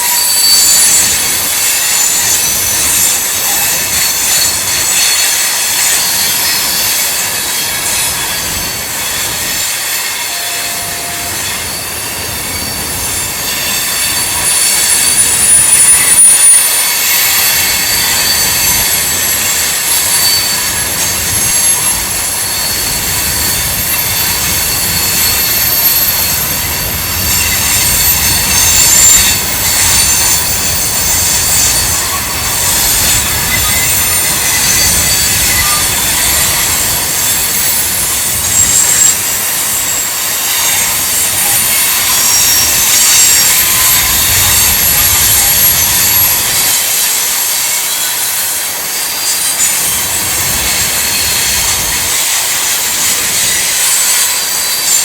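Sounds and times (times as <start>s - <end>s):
low rumble of train cars: 0.0s - 55.0s
train wheels squealing on rail: 0.0s - 55.0s.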